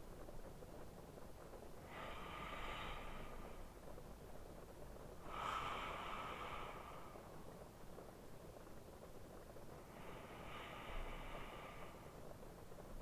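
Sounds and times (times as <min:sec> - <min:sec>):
man breathing slowly: 0:01.8 - 0:04.0, 0:05.2 - 0:07.6, 0:09.7 - 0:12.7.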